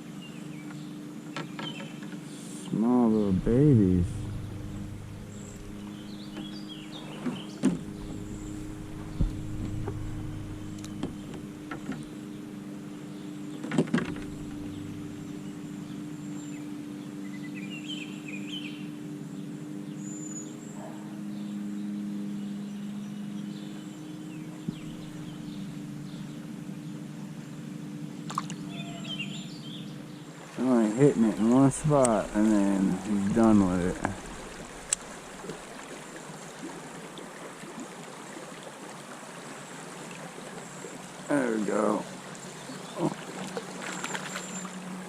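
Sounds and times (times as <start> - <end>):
bird chirping: 0.2 - 12.1, 13.1 - 27.0, 28.5 - 35.6
low hum: 2.5 - 17.1, 19.3 - 37.1.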